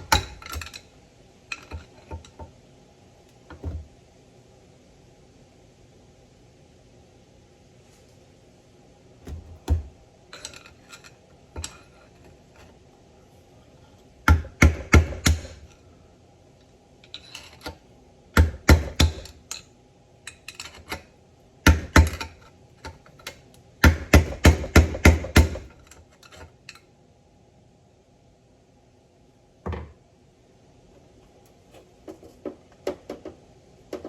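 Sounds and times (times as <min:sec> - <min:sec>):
hammer tapping on metal: 0:14.3 - 0:15.6.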